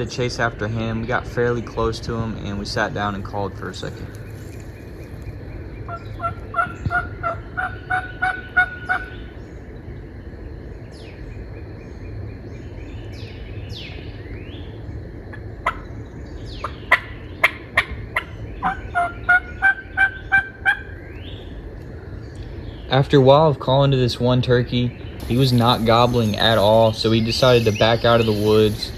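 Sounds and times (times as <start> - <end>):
songbirds chirping faintly: 0.0 - 28.9
turkey yelping: 5.9 - 9.1, 16.6 - 20.9.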